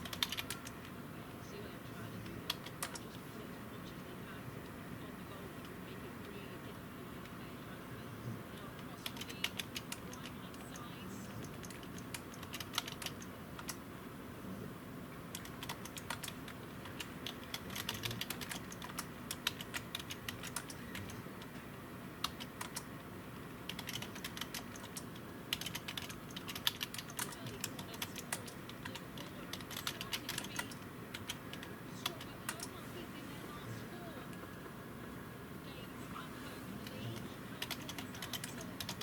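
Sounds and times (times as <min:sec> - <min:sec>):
computer keyboard typing: 0:00.0 - 0:00.9, 0:02.2 - 0:03.2, 0:08.6 - 0:13.8, 0:15.3 - 0:21.6, 0:22.2 - 0:32.8, 0:36.8 - 0:39.0.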